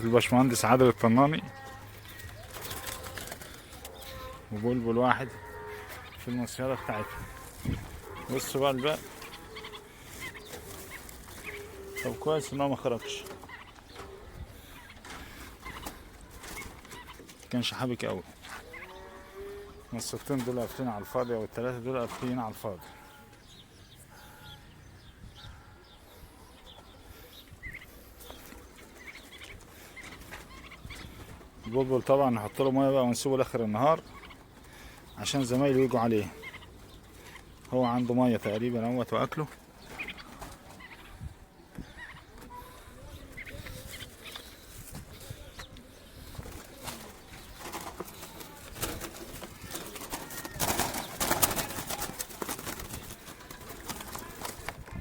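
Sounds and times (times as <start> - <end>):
small birds chirping: 0.0 - 55.0
doves rustling in trap: 1.5 - 17.5, 42.5 - 55.0
rustling and clattering burst: 46.5 - 55.0.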